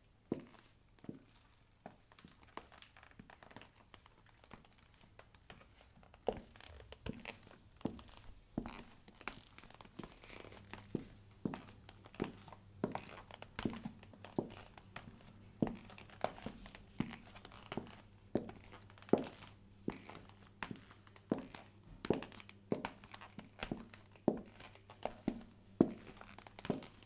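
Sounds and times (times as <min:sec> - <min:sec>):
high heels clicking on hard floor: 0:06.2 - 0:27.0
leather creaking: 0:06.3 - 0:10.6.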